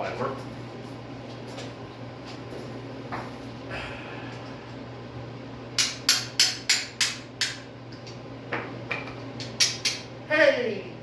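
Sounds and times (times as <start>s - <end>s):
low steady hum: 0.0s - 11.0s
hammer striking metal punch: 5.8s - 7.6s.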